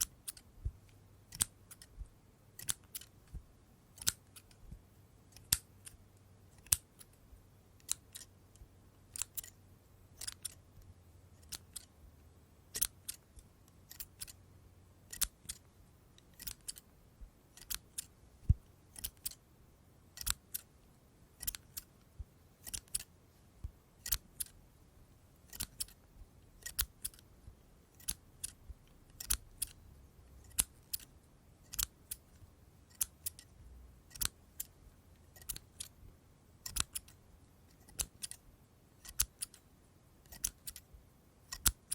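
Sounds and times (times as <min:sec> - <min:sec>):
scissors snipping: 0:00.0 - 0:02.0, 0:02.6 - 0:03.4, 0:04.0 - 0:04.6, 0:05.3 - 0:07.2, 0:07.8 - 0:09.6, 0:11.4 - 0:11.9, 0:12.8 - 0:13.2, 0:13.9 - 0:14.4, 0:15.1 - 0:15.6, 0:16.3 - 0:16.8, 0:17.5 - 0:19.4, 0:20.2 - 0:20.7, 0:21.4 - 0:21.9, 0:22.6 - 0:23.1, 0:24.0 - 0:24.6, 0:25.4 - 0:26.0, 0:26.6 - 0:27.2, 0:27.9 - 0:29.8, 0:30.4 - 0:33.5, 0:34.1 - 0:34.8, 0:35.4 - 0:35.9, 0:36.6 - 0:38.4, 0:39.0 - 0:39.6, 0:40.2 - 0:40.9, 0:41.5 - 0:41.9.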